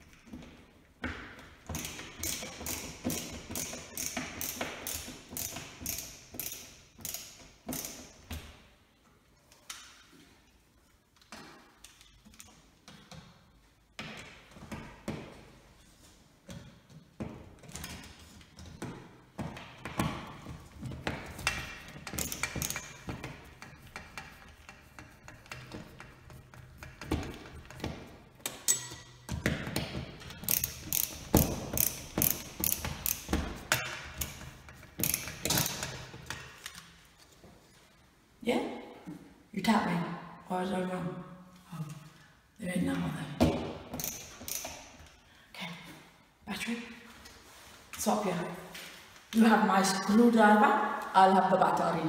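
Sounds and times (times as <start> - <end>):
screwdriver clicking and scraping: 1.7 - 8.1, 21.3 - 27.9, 30.2 - 36.9, 44.0 - 45.1.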